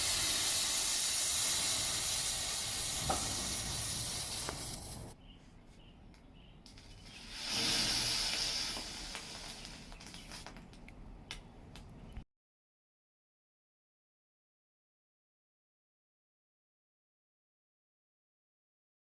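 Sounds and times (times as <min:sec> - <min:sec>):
crackles: 0:00.0 - 0:05.2, 0:06.1 - 0:12.2
firework composition hissing: 0:00.0 - 0:05.2, 0:06.7 - 0:10.8.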